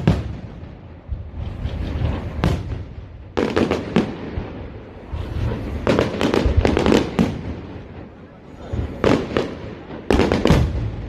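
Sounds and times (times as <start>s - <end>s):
fireworks bangs and crackles: 0.0s - 11.0s
low rumble: 0.3s - 3.4s, 4.2s - 9.1s.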